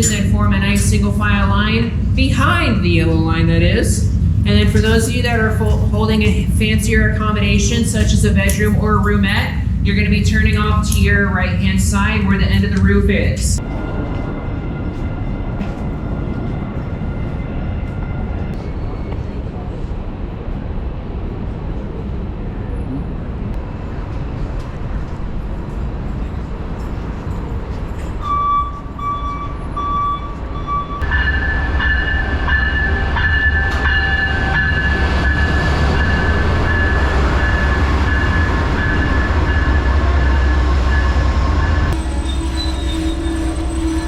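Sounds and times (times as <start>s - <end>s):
train rumble: 0.0s - 44.0s
high squeal: 28.2s - 44.0s.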